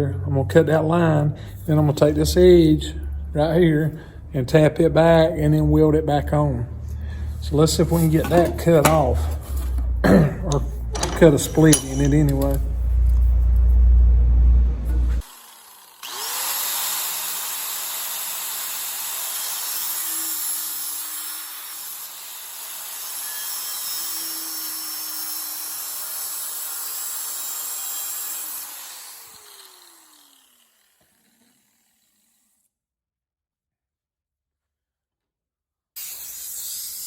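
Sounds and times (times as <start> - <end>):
cutoff wheel cutting sheet metal: 7.8 - 9.8, 10.5 - 12.6.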